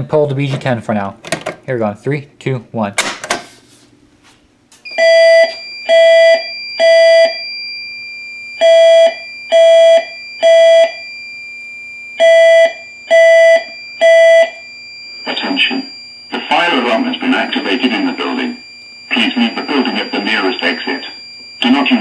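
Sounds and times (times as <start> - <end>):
fire alarm beeps: 4.8 - 22.0
high-pitched whine: 15.1 - 22.0.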